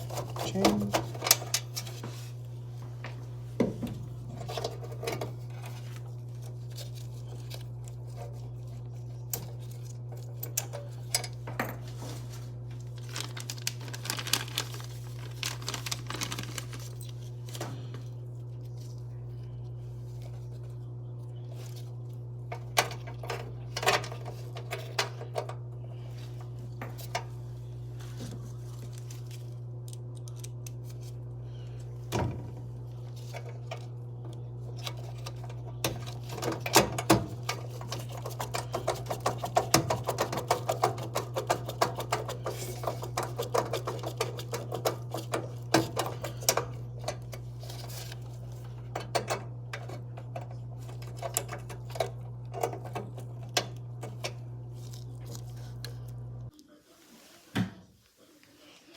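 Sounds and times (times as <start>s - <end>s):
furnace motors humming: 0.0s - 56.9s
small clicks and rattles: 12.9s - 17.2s.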